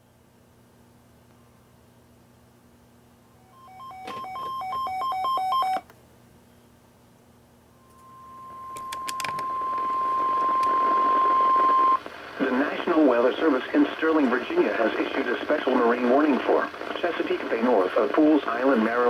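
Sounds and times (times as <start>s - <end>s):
steady warning alarm tone: 3.4s - 5.8s, 7.7s - 12.0s
two-pitch electronic beeping: 7.8s - 12.0s
static: 7.8s - 19.0s
clicks: 8.7s - 12.2s.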